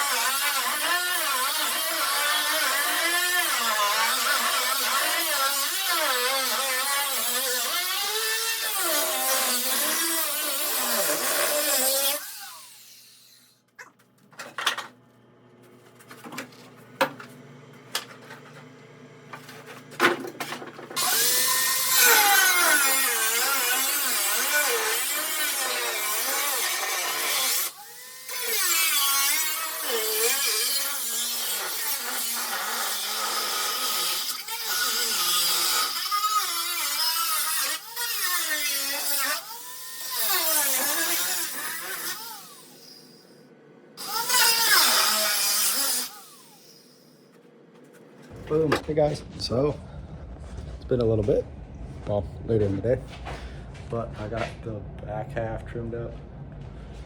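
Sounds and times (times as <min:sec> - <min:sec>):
power tool cutting sheet metal: 0:00.0 - 0:13.6, 0:20.0 - 0:43.4, 0:44.0 - 0:47.2.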